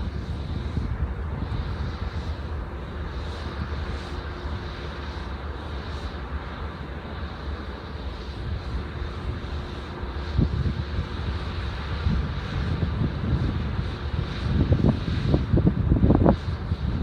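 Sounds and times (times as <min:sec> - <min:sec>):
wind buffeting microphone: 0:00.0 - 0:04.8, 0:08.4 - 0:17.0
freight train rumble: 0:00.0 - 0:17.0.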